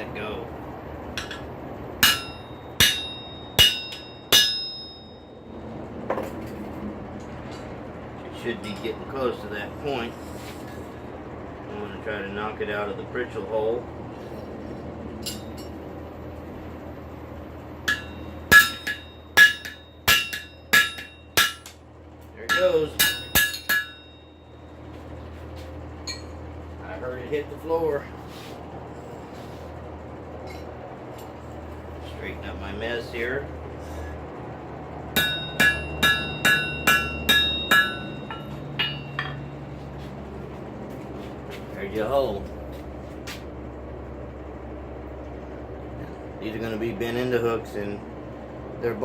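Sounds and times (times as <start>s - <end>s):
hammer striking anvil: 1.2s - 5.3s, 17.8s - 21.8s, 22.4s - 24.4s, 35.1s - 39.6s.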